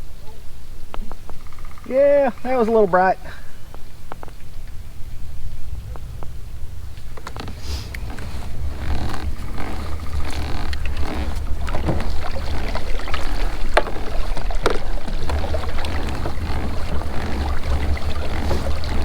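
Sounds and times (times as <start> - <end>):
wind buffeting microphone: 1.1 - 19.0
knocks against boat: 7.2 - 19.0.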